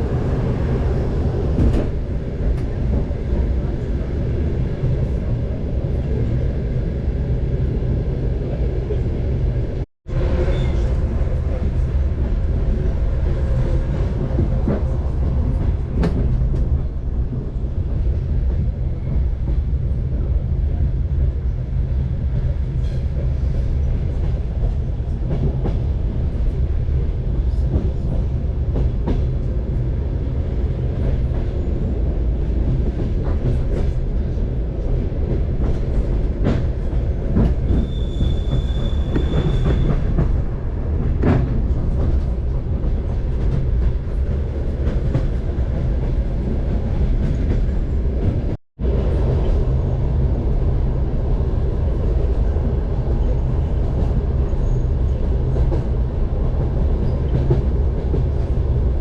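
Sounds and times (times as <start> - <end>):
train wheels rumbling on rails: 0.0 - 59.0
high wheel squeal: 37.8 - 39.9.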